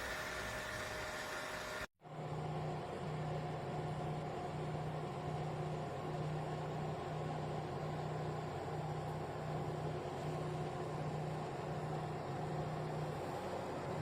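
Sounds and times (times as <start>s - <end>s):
fan heater air rush: 0.0s - 14.0s.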